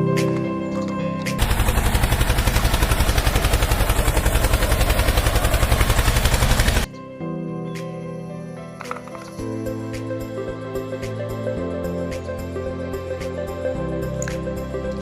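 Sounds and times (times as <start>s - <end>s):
soft music: 0.0s - 1.4s, 6.9s - 15.0s
loud rapid rattle: 1.4s - 6.9s.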